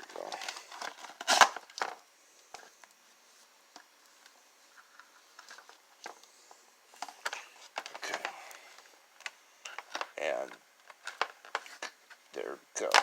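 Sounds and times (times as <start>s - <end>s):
plastic packaging crackling: 0.0s - 2.0s, 6.9s - 12.2s.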